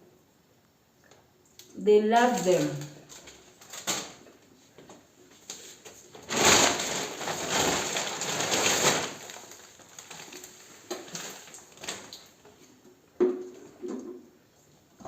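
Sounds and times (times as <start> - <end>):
packaging crinkling and rustling: 2.3 - 12.5.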